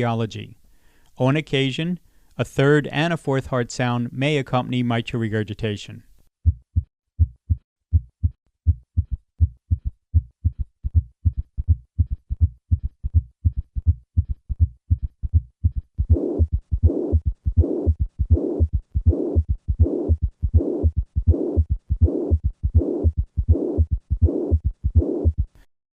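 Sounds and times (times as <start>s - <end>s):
heartbeats in gallop rhythm: 6.4s - 25.7s
hissing heart murmur: 7.9s - 25.6s.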